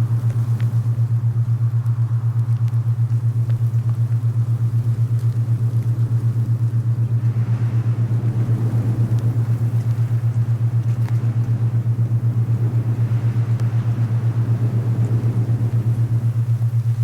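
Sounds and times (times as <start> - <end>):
soft rush of wind: 0.0 - 17.0
throbbing low hum tone: 0.0 - 17.0.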